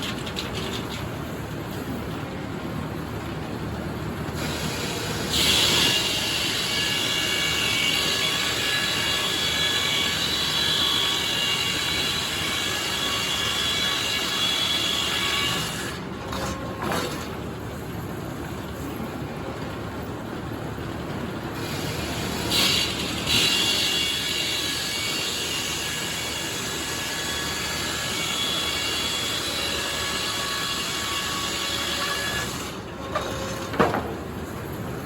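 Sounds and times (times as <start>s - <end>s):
sawmill running: 0.0s - 35.0s
saw blade whining through wood: 4.4s - 17.4s, 21.6s - 34.2s.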